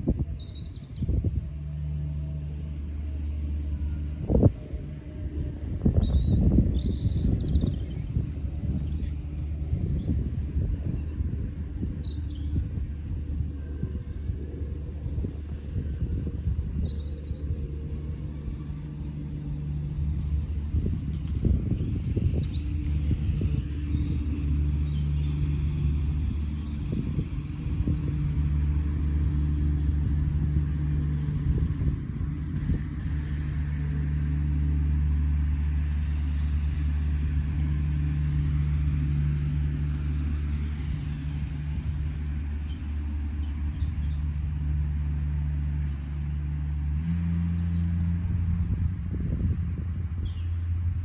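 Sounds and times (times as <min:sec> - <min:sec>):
steady low drone: 0:00.0 - 0:51.0.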